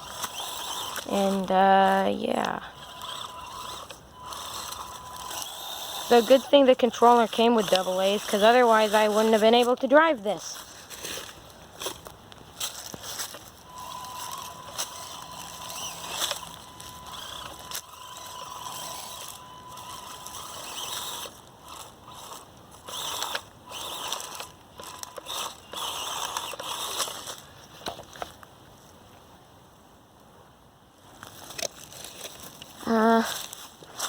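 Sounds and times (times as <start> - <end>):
small electric motor whirring: 0.0 - 12.0, 12.6 - 27.5
thin steady whine: 0.0 - 28.0.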